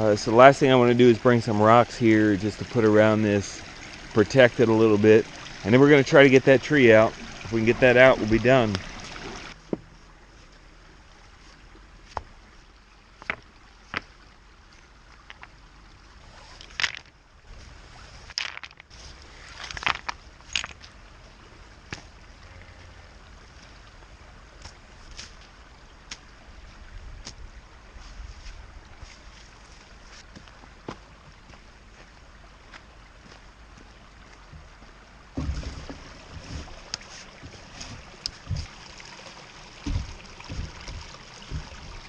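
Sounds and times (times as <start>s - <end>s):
creek water running: 0.0s - 42.0s
sharp knocks and clatters: 35.4s - 38.8s, 39.8s - 42.0s.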